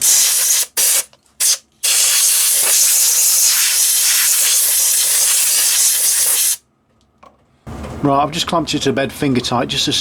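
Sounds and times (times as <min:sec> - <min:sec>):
compressed air hissing: 0:00.0 - 0:06.6.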